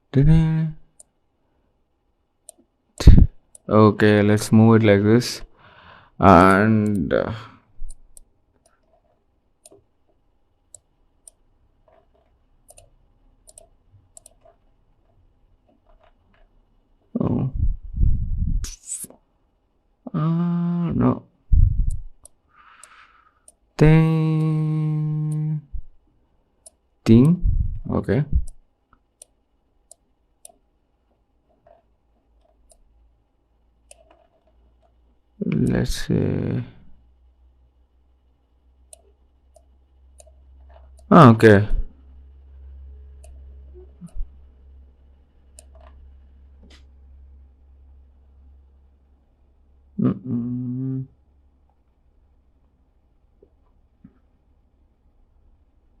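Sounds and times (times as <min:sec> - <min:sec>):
computer mouse clicks: 0:02.4 - 0:03.7, 0:06.5 - 0:07.1, 0:07.8 - 0:16.6, 0:21.8 - 0:23.7, 0:28.4 - 0:32.9, 0:33.8 - 0:35.0, 0:38.8 - 0:41.1, 0:45.5 - 0:46.0, 0:46.6 - 0:46.9
faint computer mouse clicks: 0:10.7 - 0:14.6.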